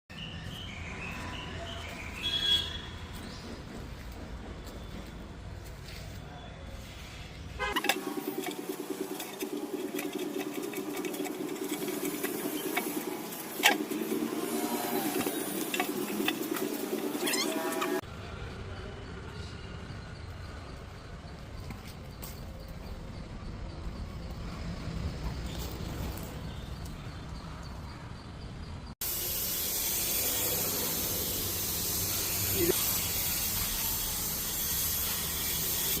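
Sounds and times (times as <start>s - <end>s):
small motor chattering: 7.7s - 18.0s, 29.0s - 36.0s
spray gun hissing: 7.8s - 18.0s, 29.0s - 36.0s.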